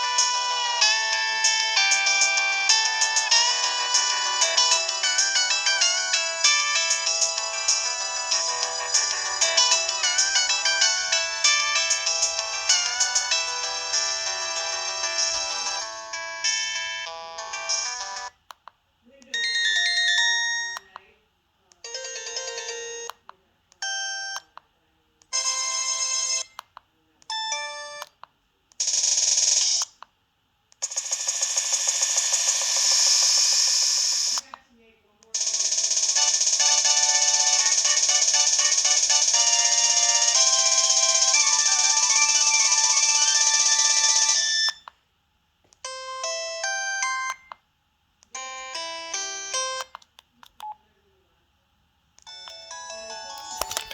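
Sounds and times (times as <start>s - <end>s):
phone ringtone melodies: 0.0s - 18.3s, 19.4s - 20.8s, 21.8s - 23.1s, 25.4s - 26.6s, 35.4s - 44.8s, 45.8s - 47.5s, 48.4s - 49.9s, 52.3s - 53.9s
tinkly ringtone phrase: 19.3s - 20.8s, 21.8s - 23.1s.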